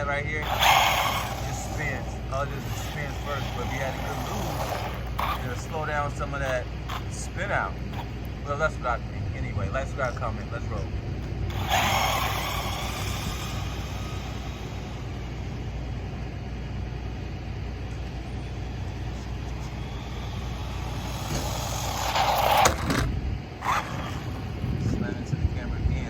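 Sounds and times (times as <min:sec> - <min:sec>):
rc car motor and tyres: 0:00.0 - 0:25.8
steady low rumble: 0:00.0 - 0:26.0.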